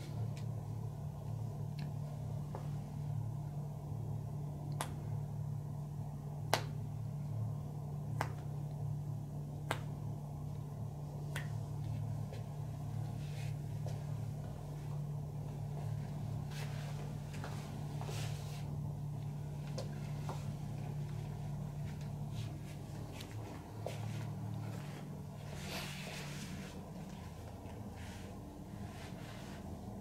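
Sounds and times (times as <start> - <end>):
steady low hum: 0.0 - 30.0
sharp clicks of hands massaging: 6.4 - 6.9, 8.1 - 8.6, 9.6 - 10.0, 11.2 - 12.0.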